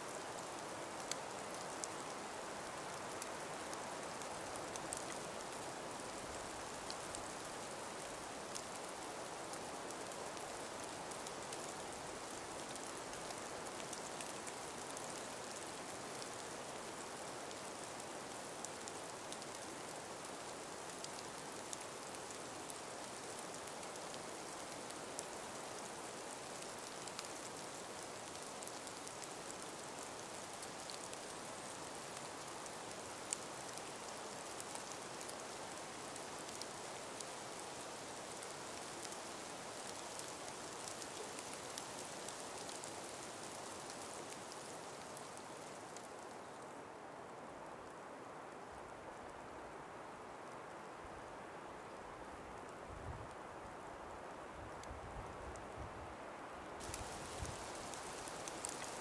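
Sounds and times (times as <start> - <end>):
breeze through forest: 0.0 - 59.0
faint ticks: 18.3 - 46.6, 56.8 - 59.0.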